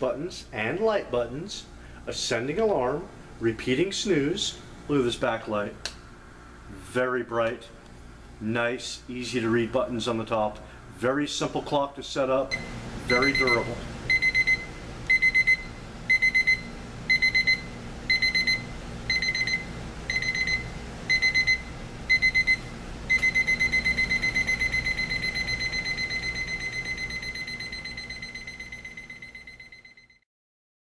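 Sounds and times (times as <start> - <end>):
alarm clock beeping: 12.5 - 30.2.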